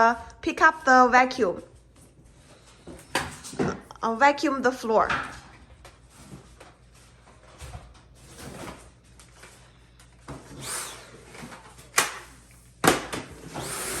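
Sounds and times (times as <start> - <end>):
vacuum cleaner whine: 10.3 - 11.7, 13.4 - 14.0.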